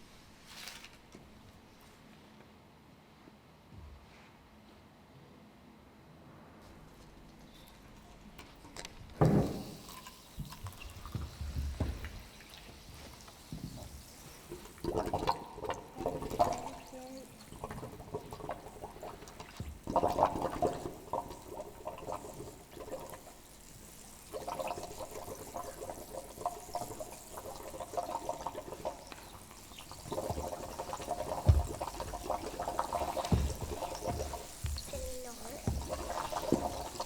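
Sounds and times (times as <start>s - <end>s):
water gurgling and bubbling: 13.8s - 37.0s.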